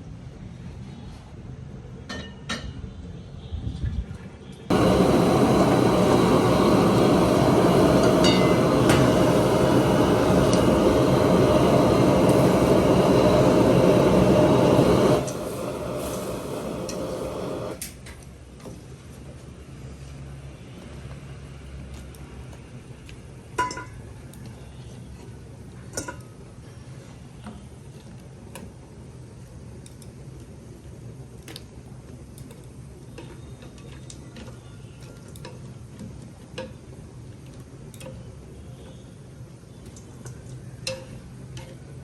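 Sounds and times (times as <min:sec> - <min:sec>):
steady low hum: 0:04.7 - 0:17.8.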